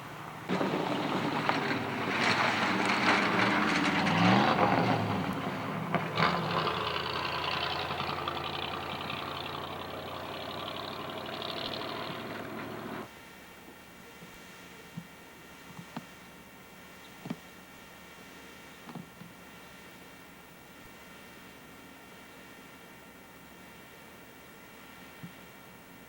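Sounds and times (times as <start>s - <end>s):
engine running: 0.0s - 13.1s.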